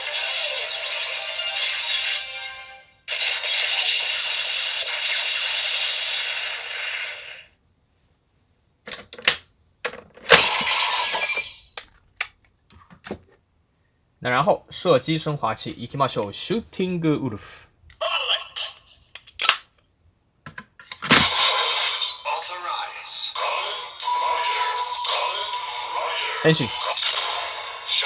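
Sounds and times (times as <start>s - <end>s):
electronic toy sound effects and music: 0.0s - 7.5s, 21.3s - 28.0s.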